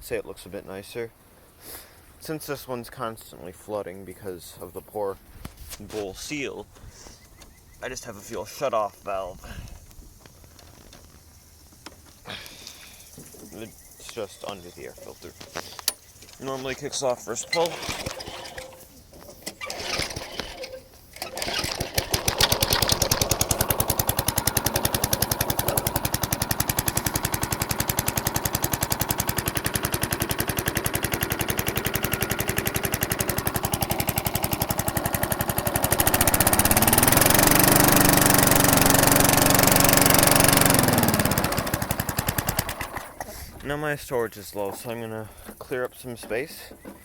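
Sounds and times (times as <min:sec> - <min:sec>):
lawn mower engine running: 0:14.0 - 0:43.4.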